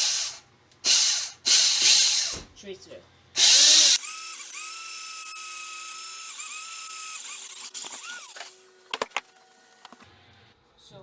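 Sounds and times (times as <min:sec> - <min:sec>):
electric drill boring into metal: 0:03.4 - 0:08.6.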